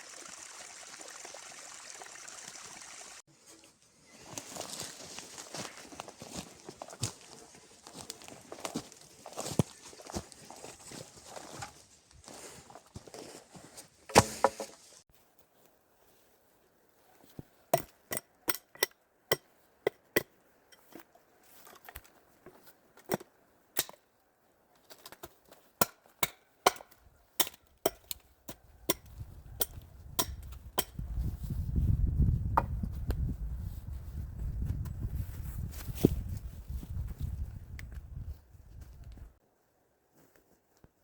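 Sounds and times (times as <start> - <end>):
axe chopping wood: 14.1 - 14.7, 25.8 - 28.1.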